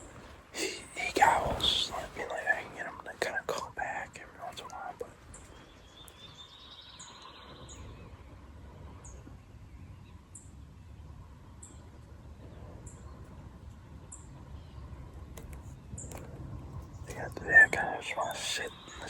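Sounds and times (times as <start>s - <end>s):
small bird chirping: 16.8s - 19.0s.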